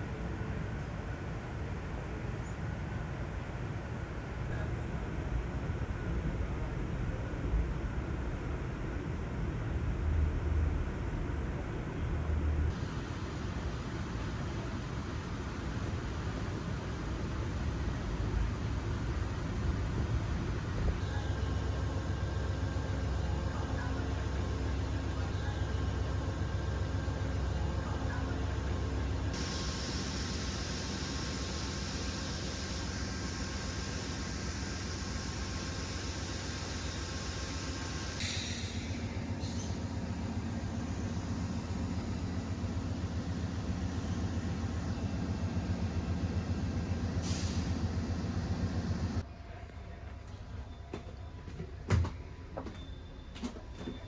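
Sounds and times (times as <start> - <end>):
train rumble and hiss: 0.0 - 54.0
brief hiss: 29.4 - 40.0.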